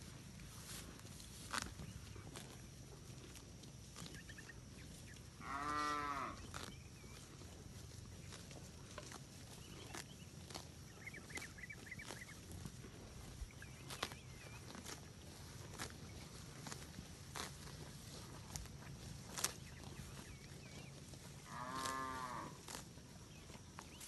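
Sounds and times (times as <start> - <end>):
cow mooing: 5.4 - 6.5, 21.4 - 22.6
faint bird chirps: 10.9 - 12.5.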